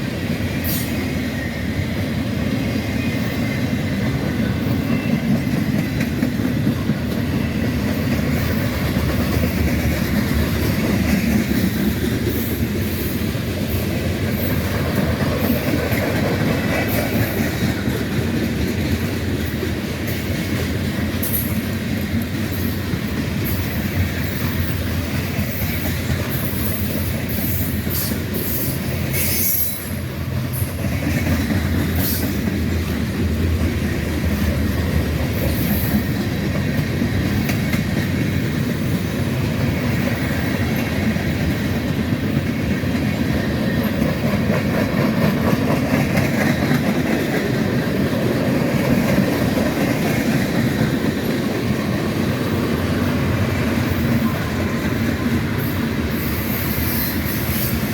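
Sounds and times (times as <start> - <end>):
freight train rumbling on rails: 0.0 - 57.9
wheel squeals: 26.4 - 30.0.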